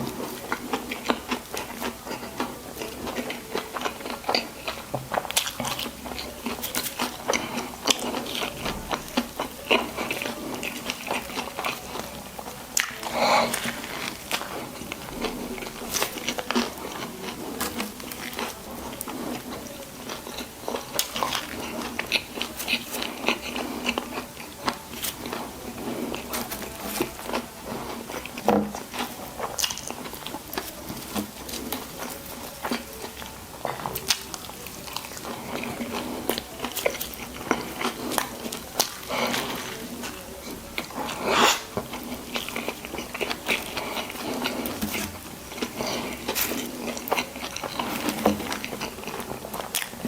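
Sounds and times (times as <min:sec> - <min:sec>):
person chewing food: 0:00.0 - 0:50.0.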